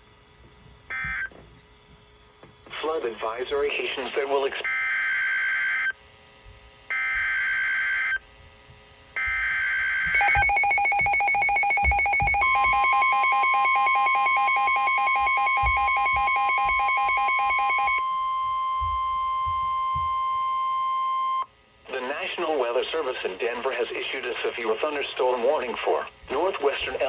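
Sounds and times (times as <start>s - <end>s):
steady warning alarm tone: 0.4s - 6.0s, 6.8s - 8.3s, 9.0s - 23.0s
pulsing electronic alarm: 0.9s - 1.4s, 4.6s - 6.0s, 6.9s - 8.2s, 9.2s - 21.6s
warbling digital data tones: 9.3s - 18.0s.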